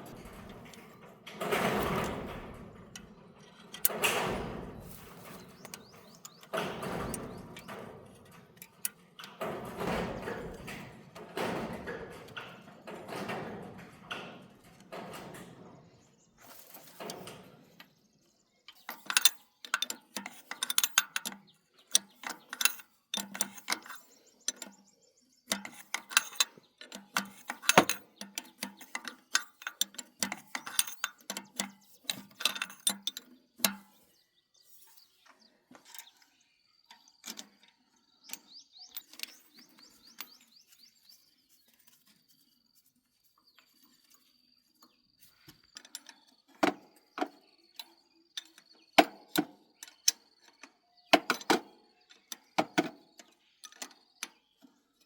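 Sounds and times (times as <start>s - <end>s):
metallic clicks from hand tools: 18.7s - 24.8s.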